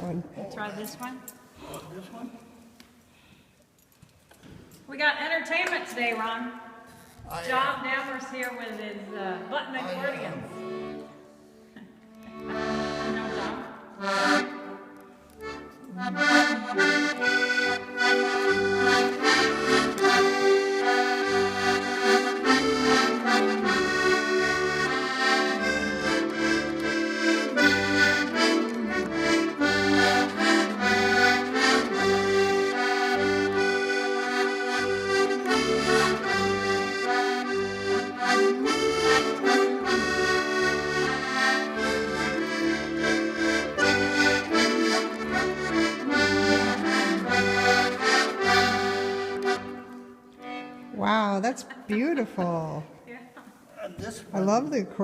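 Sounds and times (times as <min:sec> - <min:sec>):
push button accordion playing: 0:09.1 - 0:51.0.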